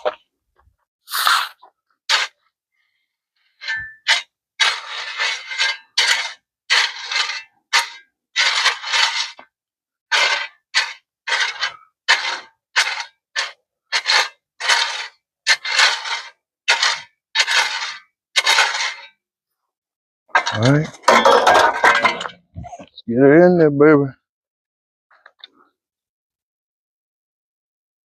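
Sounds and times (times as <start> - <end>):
tool scraping through concrete: 1.1 - 2.4, 3.5 - 19.2, 20.3 - 22.4.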